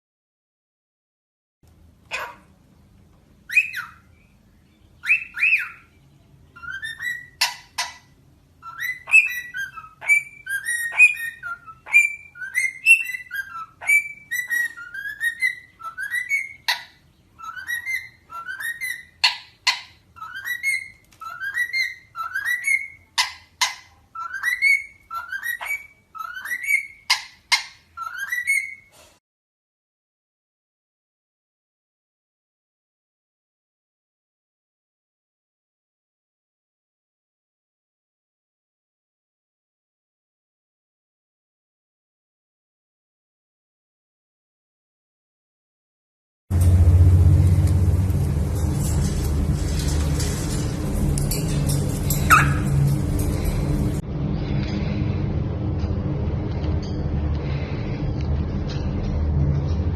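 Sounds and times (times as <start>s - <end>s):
parrot whistling rising note: 52.2s - 54.0s.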